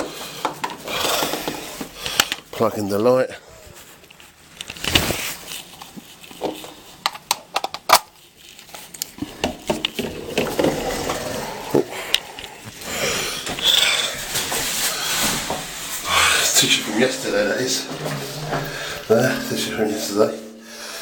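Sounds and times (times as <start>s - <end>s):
paper tissue crinkling: 3.0s - 7.0s, 8.1s - 9.4s, 10.8s - 19.7s
objects clicking and knocking in cupboard: 6.3s - 12.6s.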